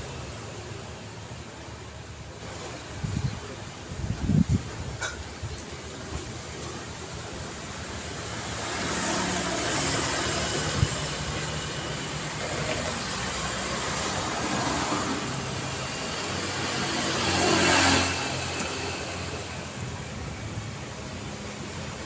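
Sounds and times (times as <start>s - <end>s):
road traffic passing: 0.0s - 22.0s
vehicle passing close: 8.1s - 22.0s.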